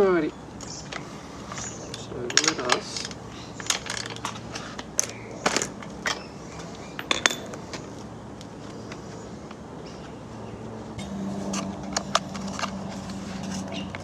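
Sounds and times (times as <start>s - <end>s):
steady low hum: 0.0s - 14.0s
metal parts clinking: 0.9s - 7.6s, 11.4s - 14.0s.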